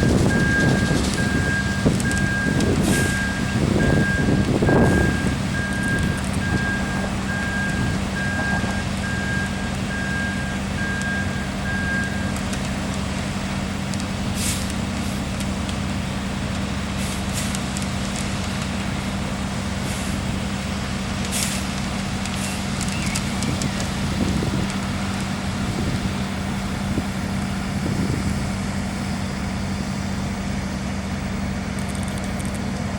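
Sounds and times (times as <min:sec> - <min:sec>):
reversing alarm beeping: 0:00.0 - 0:12.4, 0:27.5 - 0:30.4
truck diesel engine running: 0:00.0 - 0:32.9.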